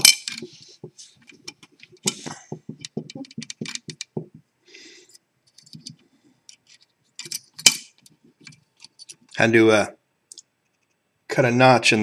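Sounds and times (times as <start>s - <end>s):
lock picking clicks and rattling: 2.8s - 4.2s.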